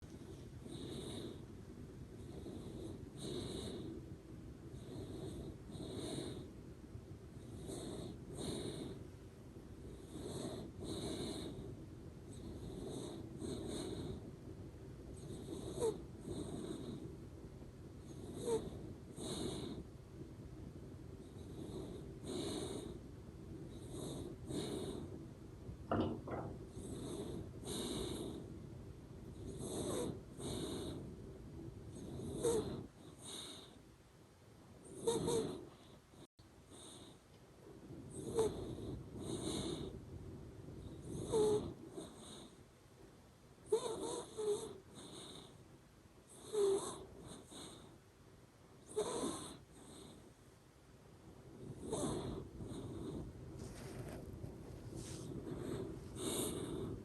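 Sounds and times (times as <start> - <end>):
dog snoring with whistling: 0.6 - 1.4, 2.2 - 4.0, 4.7 - 6.5, 7.4 - 9.0, 10.0 - 11.7, 12.3 - 14.2, 15.2 - 17.1, 18.0 - 19.8, 21.2 - 23.0, 23.7 - 25.1, 26.8 - 28.5, 29.4 - 31.1, 31.9 - 33.8, 34.8 - 37.2, 38.1 - 39.9, 40.8 - 42.6, 43.6 - 45.6, 46.3 - 47.9, 48.8 - 50.2, 51.6 - 53.3, 55.2 - 57.0.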